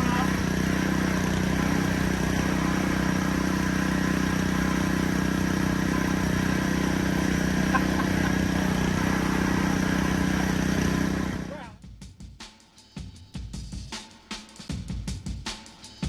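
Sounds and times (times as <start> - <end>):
small gasoline engine running: 0.0 - 11.7.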